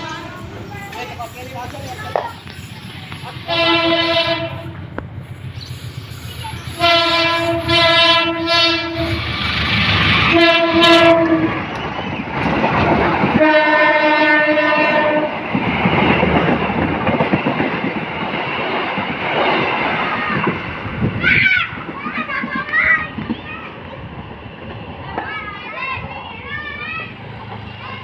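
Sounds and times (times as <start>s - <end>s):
train wheels rumbling on rails: 0.0s - 28.0s
train horn blasts: 3.4s - 4.8s, 6.8s - 9.3s, 10.3s - 11.6s, 13.4s - 15.4s.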